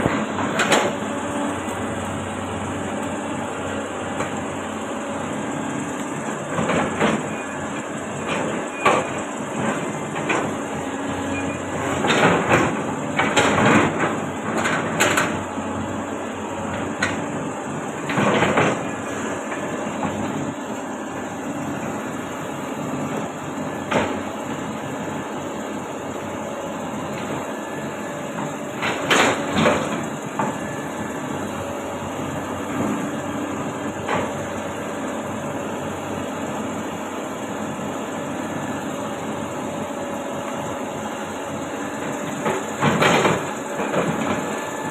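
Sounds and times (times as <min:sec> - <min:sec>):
excavator diesel engine running: 0:00.0 - 0:44.9.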